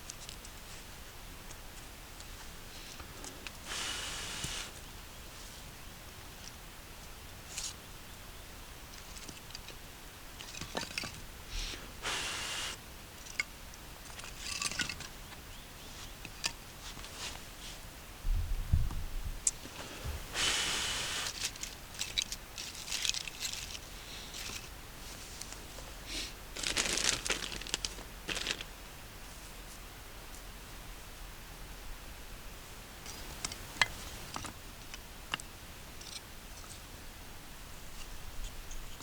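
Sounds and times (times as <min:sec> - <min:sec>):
rustling and scraping: 0:15.8 - 0:17.9, 0:19.6 - 0:30.5.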